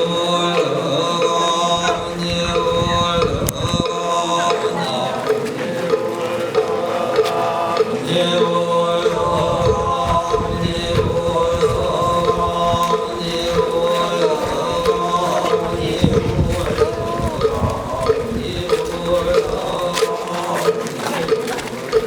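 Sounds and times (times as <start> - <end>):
chanting set to music: 0.0 - 22.0
wind rumble on microphone: 1.7 - 4.3, 9.2 - 20.0.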